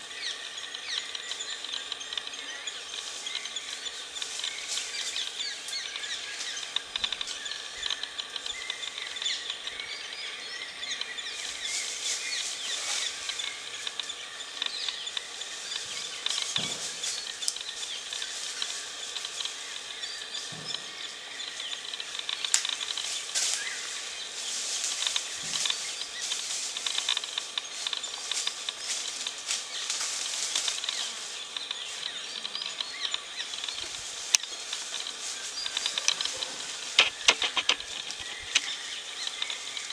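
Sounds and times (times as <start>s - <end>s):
steady high hiss: 0.0s - 39.9s
bird chirps: 30.8s - 39.9s.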